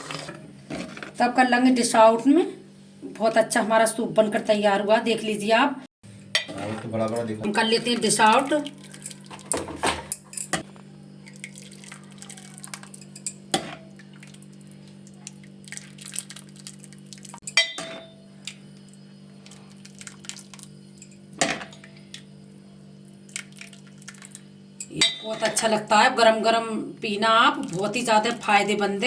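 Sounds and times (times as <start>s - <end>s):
utensil scraping a pot: 0.0s - 1.2s, 6.4s - 7.2s
steady low hum: 0.0s - 29.0s.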